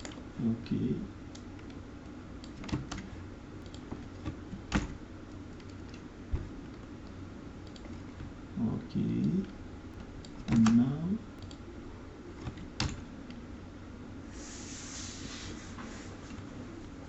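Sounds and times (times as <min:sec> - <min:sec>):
low background hum: 0:00.0 - 0:17.0
keyboard keystrokes: 0:10.2 - 0:10.8, 0:12.4 - 0:13.0.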